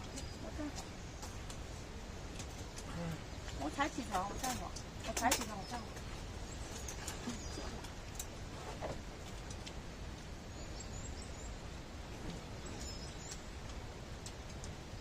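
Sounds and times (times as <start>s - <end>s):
outdoor background noise: 0.0s - 15.0s
faint bird chirps: 5.4s - 7.9s, 10.5s - 13.6s.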